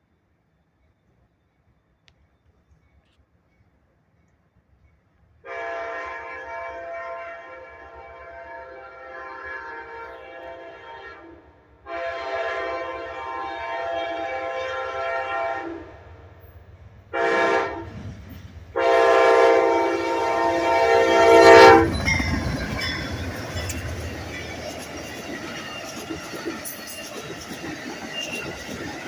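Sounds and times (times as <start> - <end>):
locomotive horn blasts: 5.4 - 15.9, 17.1 - 17.9, 18.8 - 22.0
train rushing past: 5.5 - 29.0
wheels clacking over rail joints: 20.7 - 29.0.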